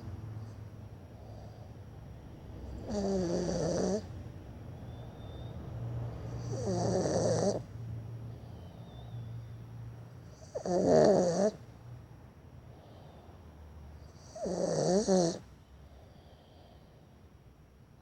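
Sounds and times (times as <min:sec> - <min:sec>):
snoring: 0:02.6 - 0:04.1, 0:06.3 - 0:07.7, 0:10.3 - 0:11.6, 0:14.1 - 0:15.4.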